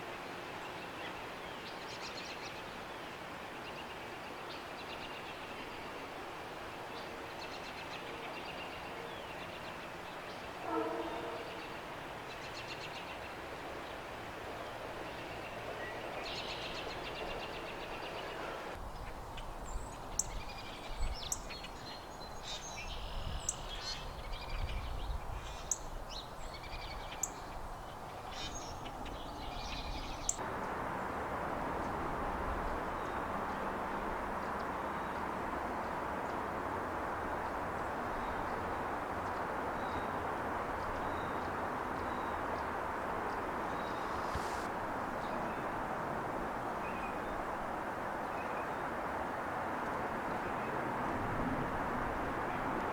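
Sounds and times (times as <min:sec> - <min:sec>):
short horn-like tone: 0:10.6 - 0:11.6
small birds chirping: 0:19.7 - 0:30.4.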